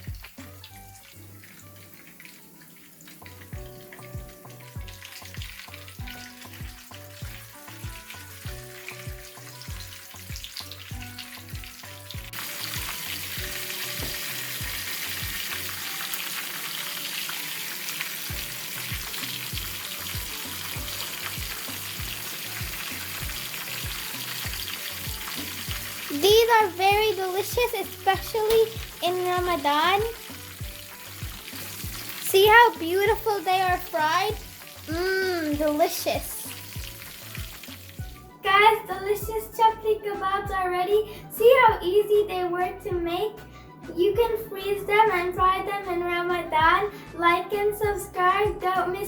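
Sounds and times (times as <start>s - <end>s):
patties sizzling in hot oil: 0.0s - 39.6s
background music with steady beat: 0.0s - 49.0s.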